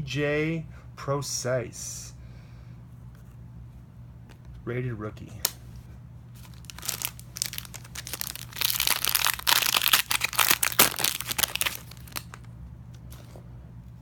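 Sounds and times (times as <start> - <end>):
foil wrapper crinkling and tearing: 6.4 - 12.5.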